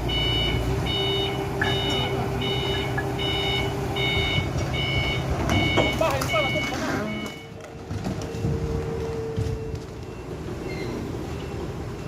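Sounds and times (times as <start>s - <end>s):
forklift backup alarm beeping: 0.0s - 11.7s
forklift engine running low: 0.0s - 12.0s.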